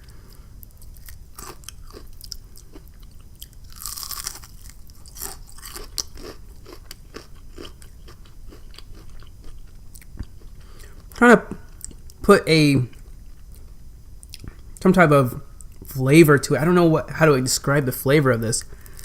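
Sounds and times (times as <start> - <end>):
crunchy fried food chewing: 0.0 - 12.2.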